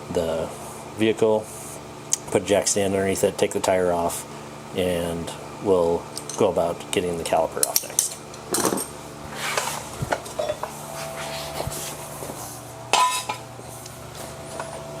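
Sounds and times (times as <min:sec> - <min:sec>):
metal tools clanking: 0:07.6 - 0:09.0, 0:09.6 - 0:10.7, 0:12.9 - 0:13.4.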